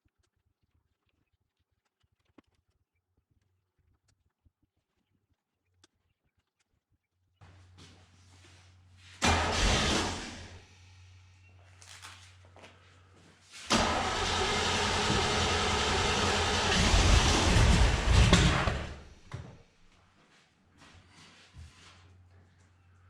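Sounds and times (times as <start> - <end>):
engine running and revving: 9.2 - 10.6, 13.7 - 19.2
engine cranking and starting: 9.2 - 10.7, 13.6 - 19.4.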